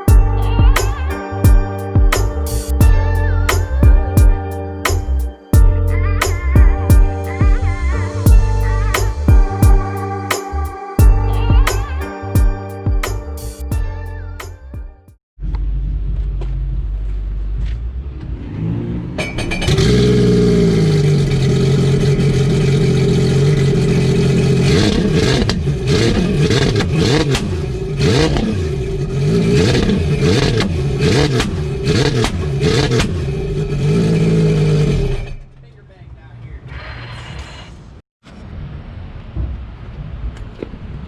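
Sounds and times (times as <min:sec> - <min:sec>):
jet ski engine starting and revving: 0:18.5 - 0:35.6.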